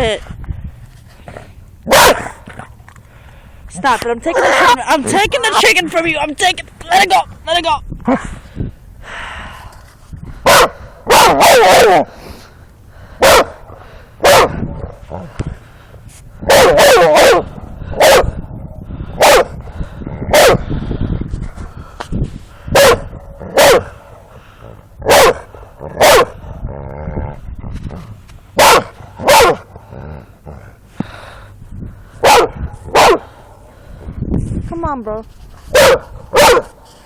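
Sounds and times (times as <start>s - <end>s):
dog barking: 1.9s - 2.4s, 4.3s - 4.8s, 10.5s - 12.1s, 13.2s - 13.6s, 14.2s - 14.5s, 16.5s - 18.3s, 19.2s - 19.5s, 20.3s - 20.6s, 22.8s - 23.9s, 25.1s - 26.4s, 28.6s - 29.6s, 32.2s - 33.3s, 35.7s - 36.8s.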